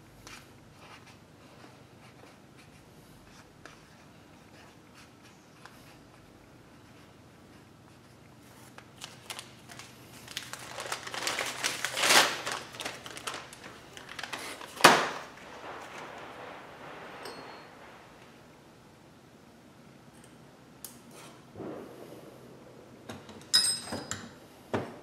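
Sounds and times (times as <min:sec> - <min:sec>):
hands rustling crinkly material: 0:07.9 - 0:18.7.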